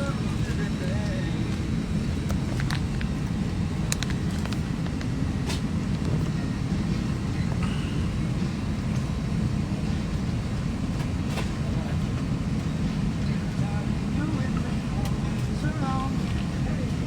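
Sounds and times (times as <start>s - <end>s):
airliner cabin rumble: 0.0s - 17.0s.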